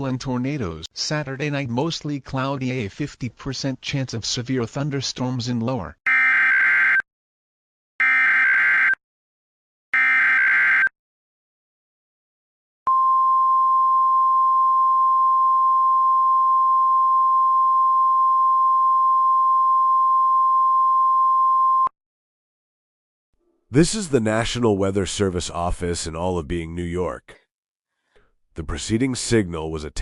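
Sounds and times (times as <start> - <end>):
steady alarm tone: 8.0 - 9.0, 10.0 - 10.9.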